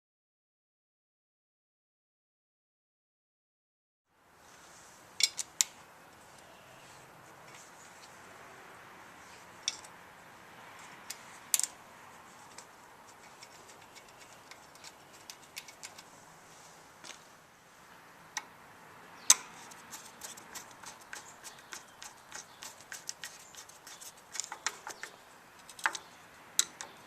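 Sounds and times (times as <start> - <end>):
metal hand tools clacking: 12.5 - 16.1, 19.3 - 27.0.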